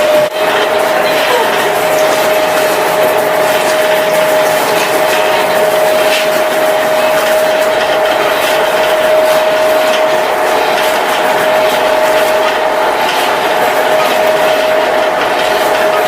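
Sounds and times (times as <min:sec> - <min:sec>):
machinery clattering and rattling: 0:00.0 - 0:16.0
machinery whine: 0:00.0 - 0:16.0.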